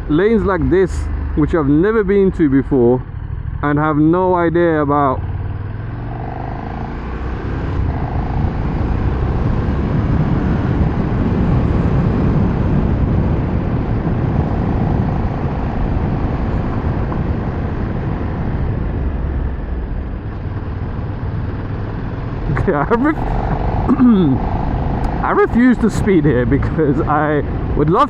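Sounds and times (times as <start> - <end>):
motorcycle engine running: 0.0 - 28.0
wind rushing on microphone: 6.9 - 28.0.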